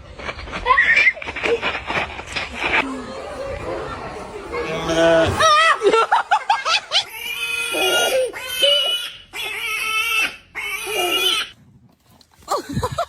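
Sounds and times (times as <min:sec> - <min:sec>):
farm animal harsh cries: 0:07.0 - 0:11.6.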